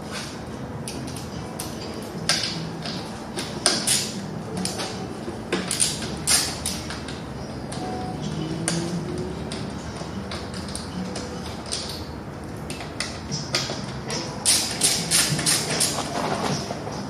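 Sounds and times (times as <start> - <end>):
hand tools and parts clattering: 12.7 - 17.0.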